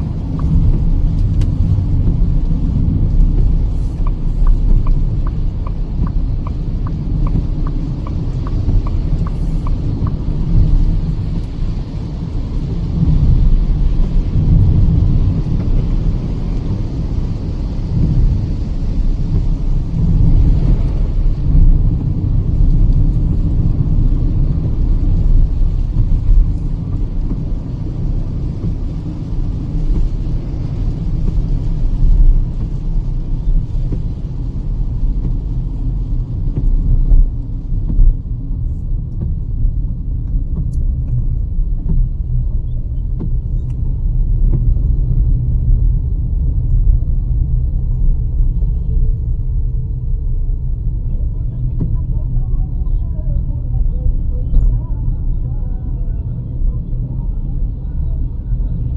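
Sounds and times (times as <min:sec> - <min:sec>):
tyre and road hiss: 0:00.0 - 0:44.7
road and engine rumble: 0:00.0 - 0:58.9.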